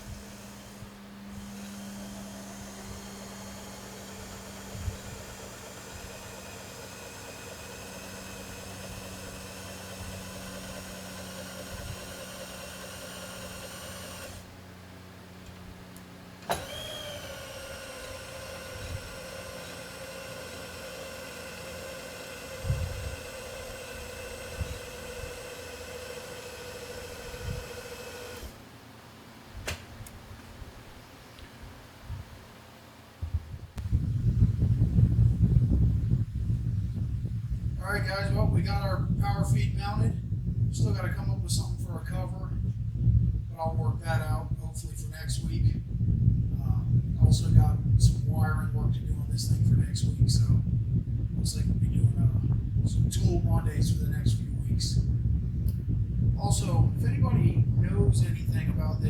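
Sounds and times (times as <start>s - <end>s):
power feed motor whine: 0.0s - 28.7s
light knocks: 29.6s - 29.9s.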